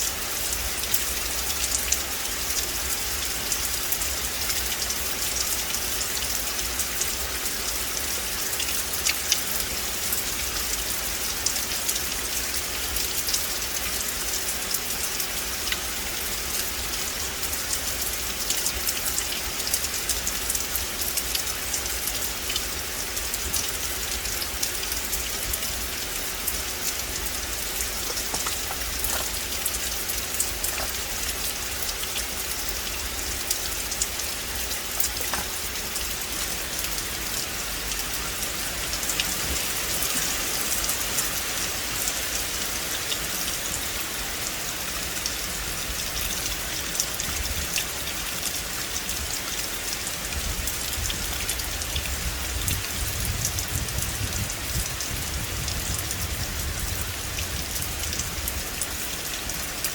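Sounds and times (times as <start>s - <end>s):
hiss of downpour: 0.0s - 59.9s
raindrops ticking: 0.2s - 42.4s.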